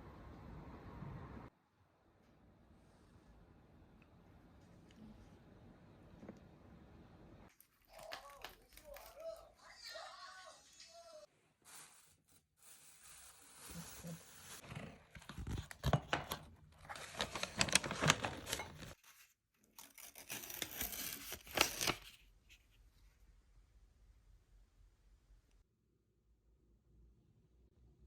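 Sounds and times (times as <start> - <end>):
packaging tearing and crinkling: 7.6 - 9.4, 15.2 - 19.0, 19.7 - 22.2.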